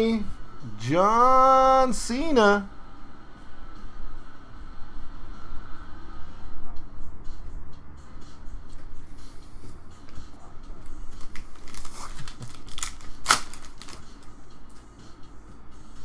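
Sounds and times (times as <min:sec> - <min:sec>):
card pack wrapper tearing: 0:11.1 - 0:14.3.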